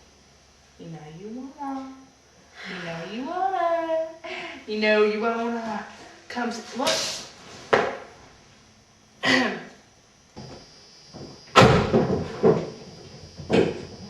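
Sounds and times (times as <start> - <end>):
sharp thumps and a slam: 11.2 - 12.8.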